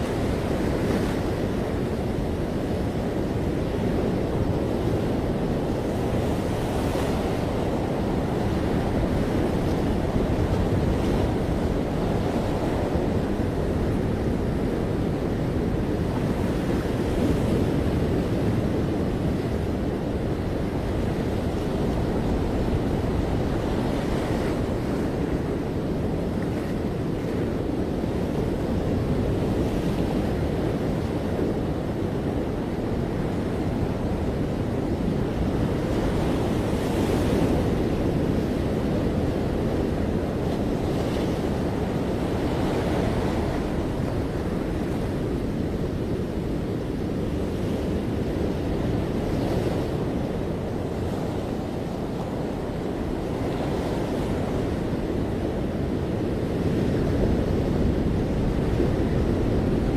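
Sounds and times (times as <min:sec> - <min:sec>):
ocean waves breaking on beach: 0:00.0 - 0:59.9.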